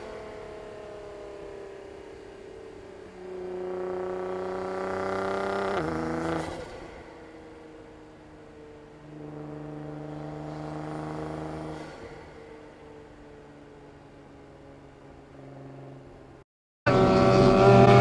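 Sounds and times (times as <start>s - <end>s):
car engine revving under throttle: 0.0s - 7.4s, 8.9s - 12.8s, 16.9s - 18.0s.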